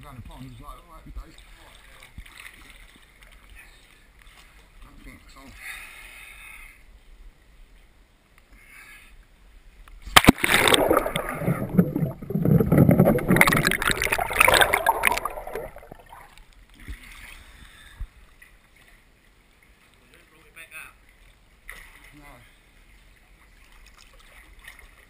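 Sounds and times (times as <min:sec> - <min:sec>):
water splashing and churning: 0:01.2 - 0:05.0, 0:10.0 - 0:25.0.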